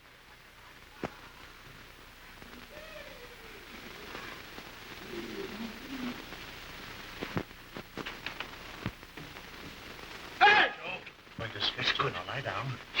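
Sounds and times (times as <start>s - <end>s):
soundtrack hiss: 0.0s - 13.0s
faint wavering voice: 2.3s - 6.3s.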